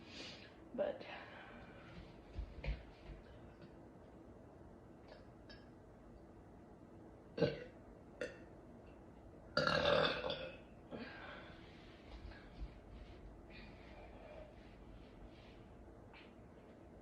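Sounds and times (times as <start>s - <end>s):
woman burping: 7.4s - 8.4s, 9.6s - 11.0s.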